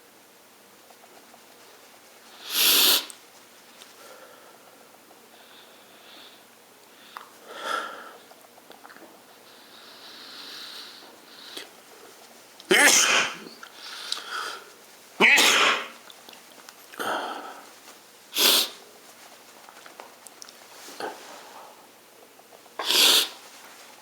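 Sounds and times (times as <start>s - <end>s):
person sneezing: 12.7s - 13.6s, 15.2s - 16.0s, 18.4s - 18.8s, 22.8s - 23.4s.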